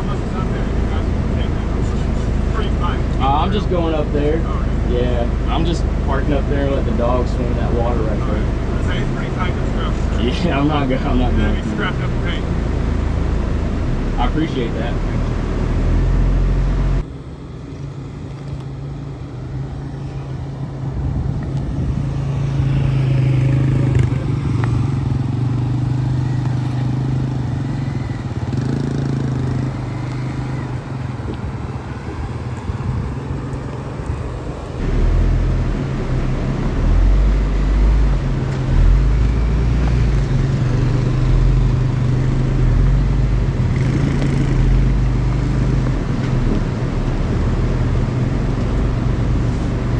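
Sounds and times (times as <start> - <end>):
truck engine humming: 0.0 - 34.8
rough road and tyre noise: 0.0 - 49.9
heavy low rumbling: 11.7 - 43.8.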